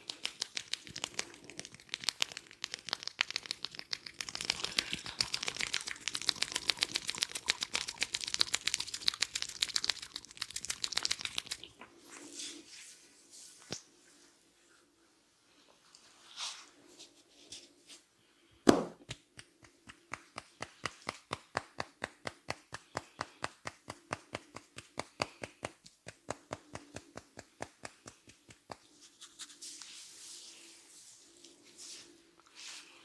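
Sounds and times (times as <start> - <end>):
hands rubbing through hair: 0.0 - 14.3, 22.9 - 33.0
sharp slap: 18.7 - 19.2
hands tapping on a head: 18.7 - 28.9.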